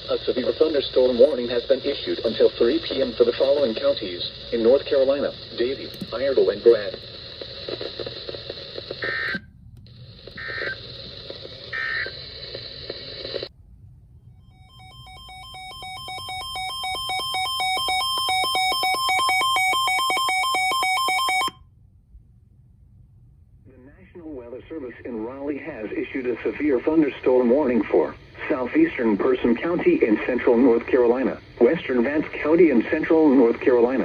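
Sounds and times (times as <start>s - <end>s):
radio hiss: 0.0s - 13.5s, 23.7s - 34.0s.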